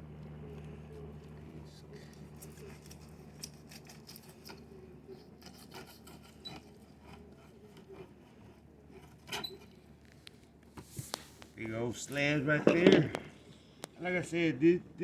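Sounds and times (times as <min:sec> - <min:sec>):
knife scraping fish skin: 0:02.4 - 0:08.0
low steady hum: 0:09.8 - 0:15.0.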